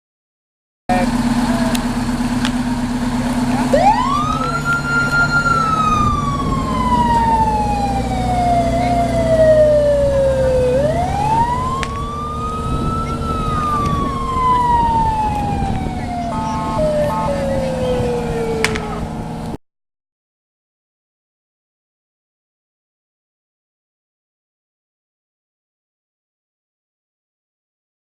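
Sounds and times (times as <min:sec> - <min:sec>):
fire truck siren wailing: 0:00.9 - 0:19.6
truck engine running: 0:00.9 - 0:19.6.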